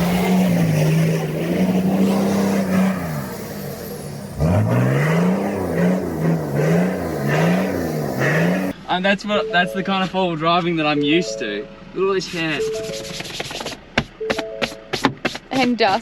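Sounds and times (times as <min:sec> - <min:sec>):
vehicle engine revving: 0:00.0 - 0:08.8.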